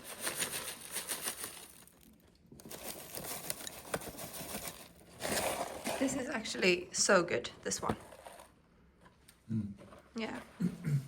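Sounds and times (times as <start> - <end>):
bag crinkling and rustling: 0.0 - 6.6.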